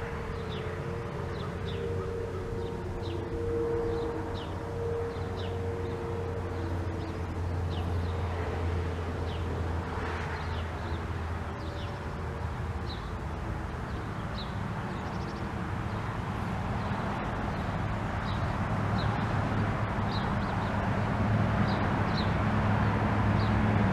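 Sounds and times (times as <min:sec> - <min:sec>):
siren low tone: 0:00.0 - 0:13.6
traffic rumble: 0:00.0 - 0:23.9
vehicle approaching: 0:00.0 - 0:23.9.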